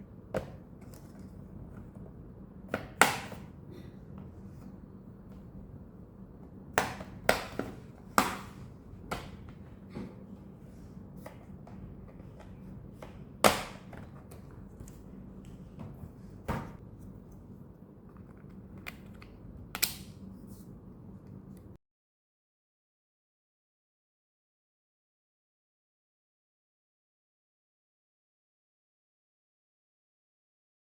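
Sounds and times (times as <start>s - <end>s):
faint steady hum: 0.0s - 21.8s.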